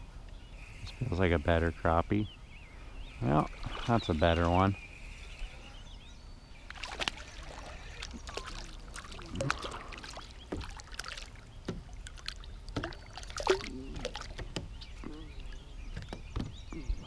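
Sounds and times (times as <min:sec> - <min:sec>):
small water splashes: 0:03.2 - 0:04.8, 0:06.6 - 0:16.2.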